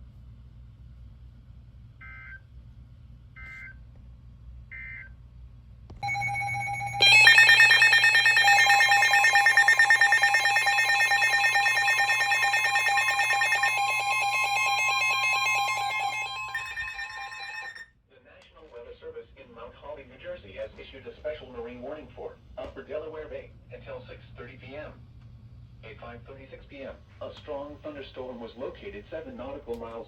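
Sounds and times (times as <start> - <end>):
steady attention tone: 6.0 - 17.8
trilling electronic alert alarm: 6.0 - 17.8
warbling data bursts: 6.0 - 17.8.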